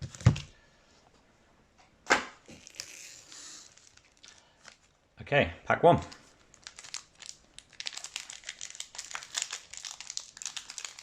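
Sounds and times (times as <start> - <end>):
foil pack crinkling and tearing: 2.5 - 4.9, 6.1 - 11.0.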